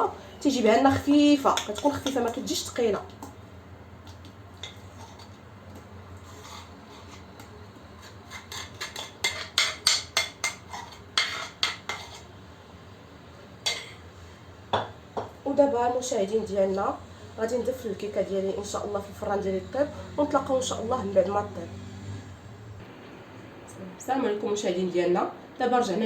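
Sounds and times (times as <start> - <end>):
utensil clinking against a bowl: 1.4 - 2.5, 8.3 - 12.3.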